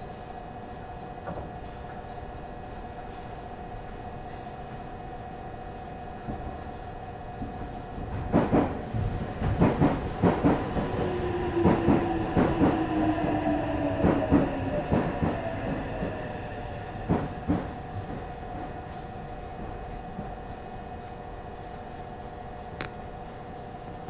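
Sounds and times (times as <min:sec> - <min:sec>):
train wheels clicking over rail joints: 0:07.3 - 0:16.3, 0:17.0 - 0:18.3
traction motor whine: 0:10.5 - 0:17.4.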